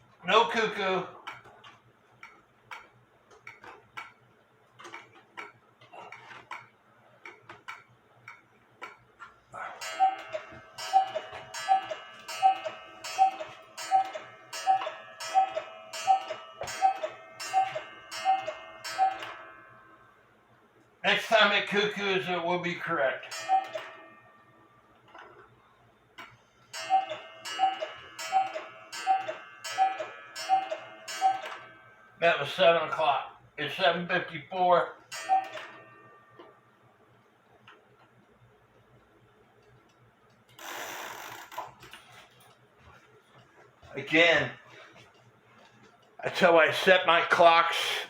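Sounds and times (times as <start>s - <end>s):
faint clocks ticking: 0.0s - 48.0s
cuckoo clock calling: 9.6s - 19.8s, 23.3s - 24.4s, 26.7s - 31.9s, 35.1s - 36.4s, 40.6s - 41.6s
clock ringing strike: 9.6s - 20.4s, 22.6s - 25.4s, 26.7s - 33.4s, 34.9s - 36.7s.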